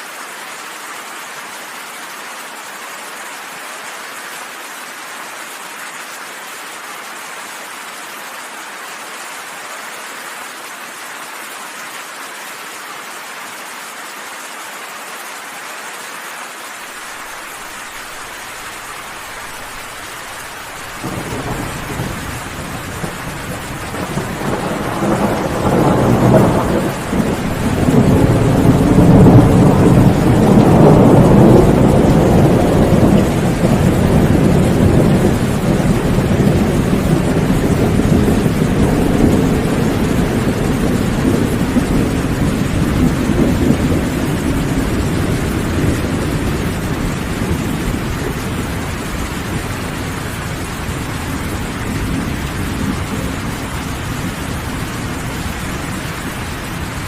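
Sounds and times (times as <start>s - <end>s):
rain hissing: 15.8s - 57.0s
thunder rumbling: 18.2s - 57.0s.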